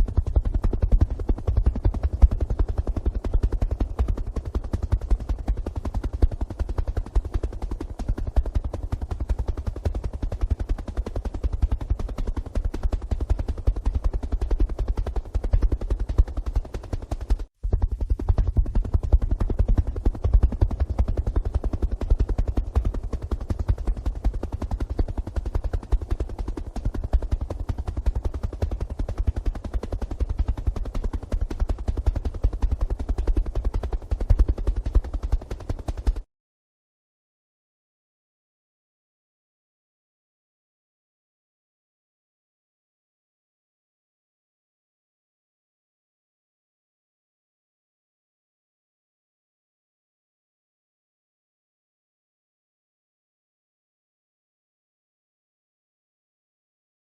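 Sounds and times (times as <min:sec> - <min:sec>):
helicopter rotor beating: 0:00.0 - 0:36.3.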